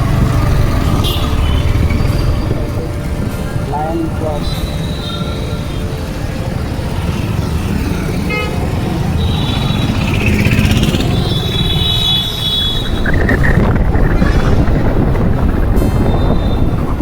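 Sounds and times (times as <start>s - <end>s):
road and wind rumble: 0.0s - 17.0s
vehicle horns honking: 0.5s - 6.8s, 8.2s - 13.7s.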